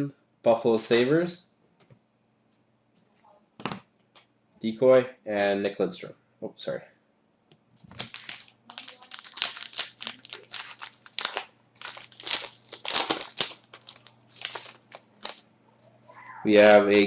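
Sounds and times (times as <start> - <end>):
faint electrical hum: 0.0 - 17.0
wrapper crinkling: 7.8 - 15.5.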